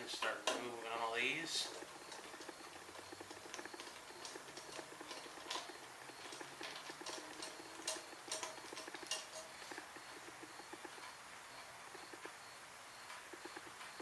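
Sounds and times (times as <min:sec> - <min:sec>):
hand tool metal clicking: 0:00.0 - 0:11.1.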